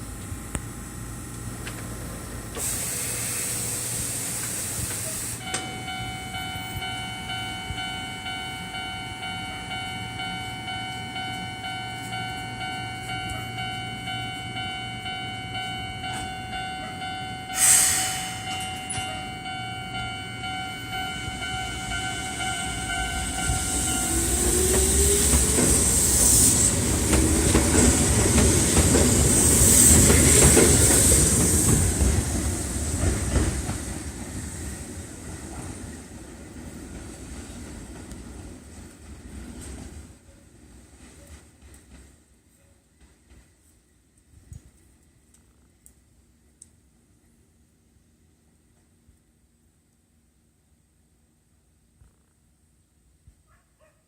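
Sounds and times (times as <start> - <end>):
electric train whine: 0.0 - 40.3
train pulling away: 0.7 - 40.1
brake air hiss: 2.5 - 5.6, 17.5 - 18.6, 23.5 - 27.0.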